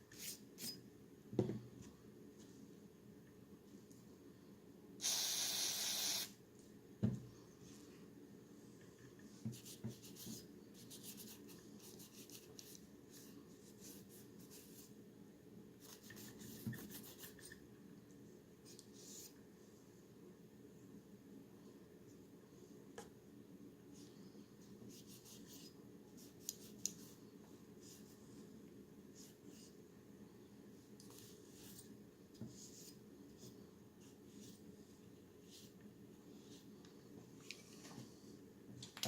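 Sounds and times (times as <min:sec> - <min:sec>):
spray hissing: 0:05.0 - 0:06.3.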